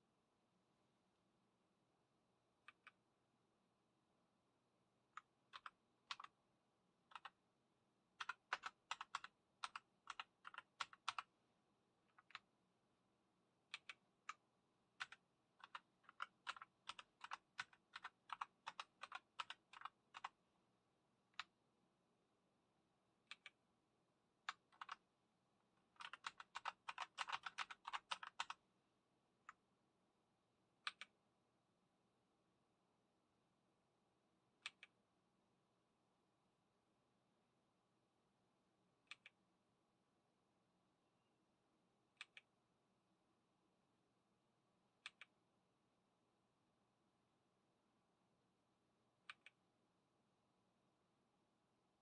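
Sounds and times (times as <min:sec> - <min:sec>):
mechanical keyboard typing: 0:05.2 - 0:06.4, 0:07.1 - 0:07.4, 0:08.2 - 0:11.3, 0:12.1 - 0:12.5, 0:13.7 - 0:14.4, 0:15.0 - 0:20.4, 0:24.5 - 0:25.0, 0:25.9 - 0:28.6.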